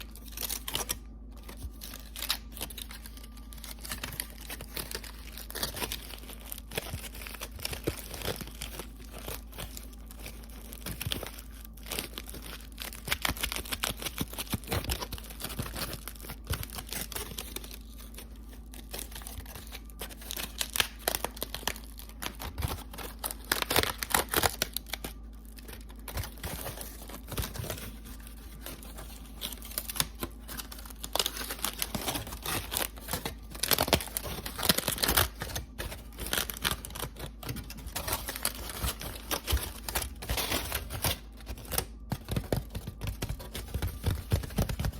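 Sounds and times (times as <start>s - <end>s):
aluminium foil crinkling: 0.0s - 44.9s.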